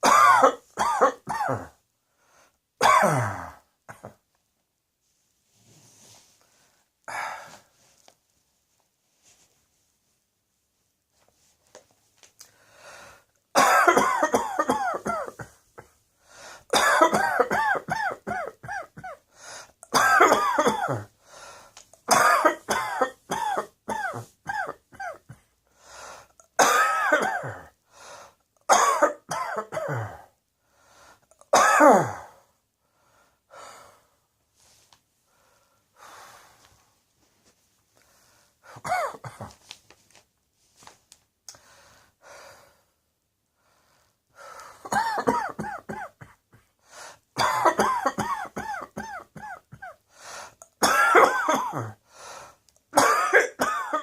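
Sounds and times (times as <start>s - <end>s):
person coughing: 0.0s - 1.8s, 2.8s - 4.2s, 13.6s - 16.0s, 16.7s - 19.2s, 19.8s - 21.1s, 22.0s - 25.5s, 26.6s - 27.8s, 28.7s - 30.3s, 31.3s - 32.4s, 38.8s - 39.6s, 44.8s - 46.7s, 47.4s - 50.0s, 50.6s - 52.0s, 52.9s - 54.0s.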